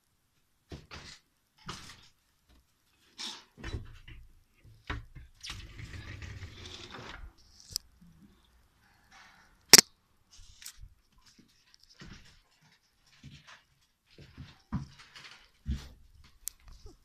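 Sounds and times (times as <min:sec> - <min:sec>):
rustling and handling noise: 0:09.0 - 0:17.0.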